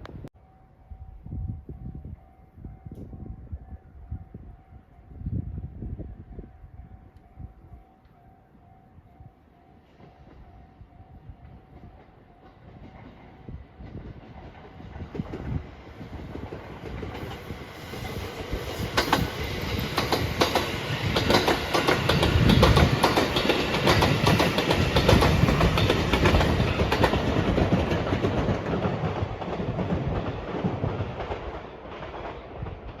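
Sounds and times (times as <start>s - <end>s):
level crossing warning bell: 0.4s - 12.9s
train wheels clattering over rails: 11.7s - 33.0s.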